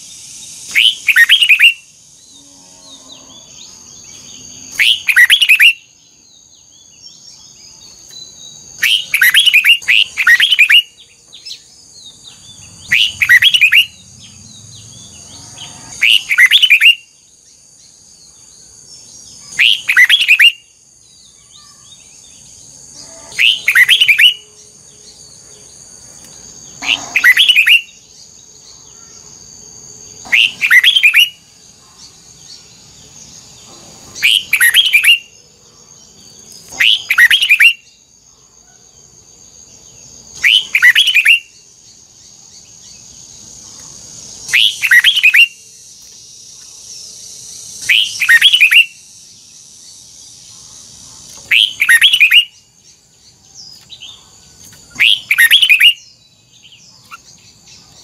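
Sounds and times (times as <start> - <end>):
faint high-pitched hum: 0.0 - 58.0
bird singing double notes: 0.6 - 7.0, 7.9 - 17.2, 22.9 - 25.3, 26.6 - 29.2.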